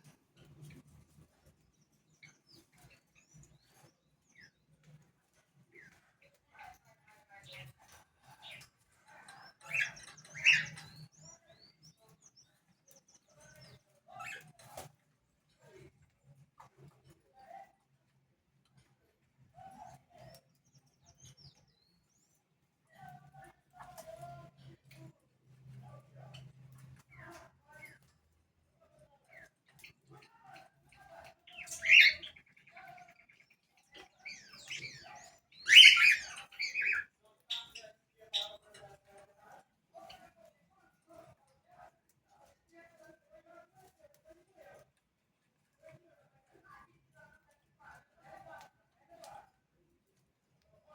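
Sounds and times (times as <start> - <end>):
birds chirping: 7.4 - 14.6, 30.9 - 38.8
bird harsh call: 31.6 - 32.3, 35.6 - 37.0.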